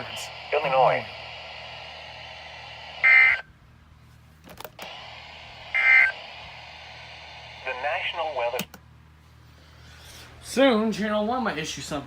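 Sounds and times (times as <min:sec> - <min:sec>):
radio hiss: 0:00.0 - 0:03.5, 0:04.8 - 0:08.8
buzzy digital tone bursts: 0:03.0 - 0:03.4, 0:05.7 - 0:06.2
clicks: 0:08.5 - 0:08.8.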